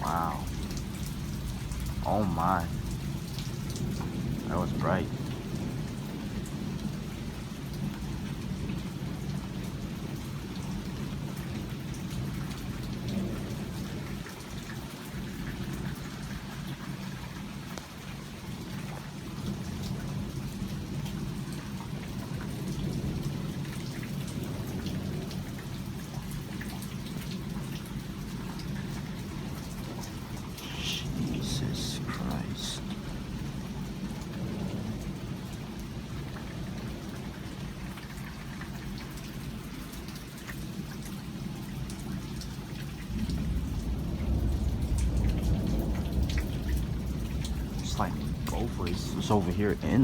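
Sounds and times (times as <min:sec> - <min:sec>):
heavy rain pattering: 0:00.0 - 0:50.0
thunder rumbling: 0:43.3 - 0:49.6.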